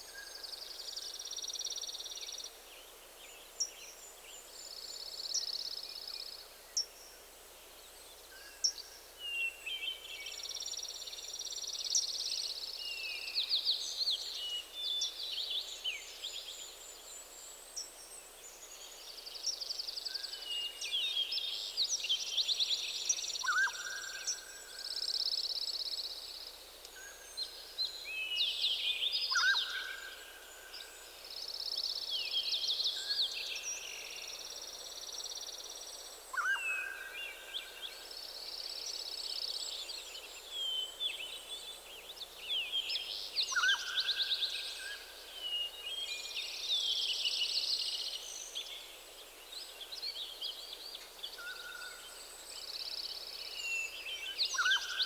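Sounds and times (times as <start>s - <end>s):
songbirds singing: 26.8s - 55.0s.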